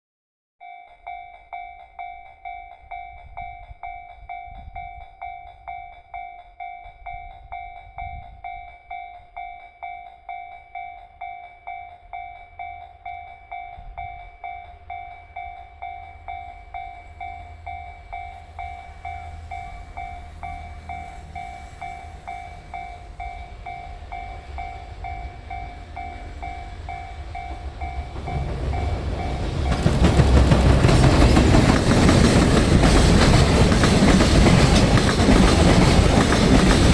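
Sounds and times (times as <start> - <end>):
level crossing warning bell: 0.6 - 36.9
freight train rumbling: 13.5 - 36.9.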